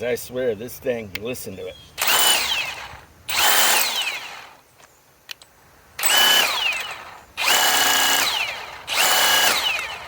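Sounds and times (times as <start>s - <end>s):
impact wrench motor whining: 2.0s - 4.6s, 6.0s - 10.0s.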